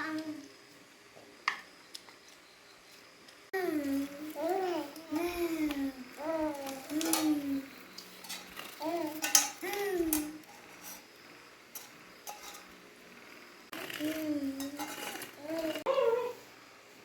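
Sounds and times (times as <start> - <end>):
utensils clinking on dishes: 3.8 - 11.1, 11.7 - 12.8, 13.8 - 15.8.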